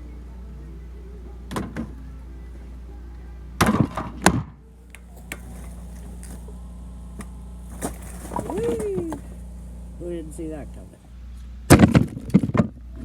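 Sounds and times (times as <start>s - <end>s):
steady low hum: 0.0s - 13.0s
firewood thudding: 3.6s - 9.9s.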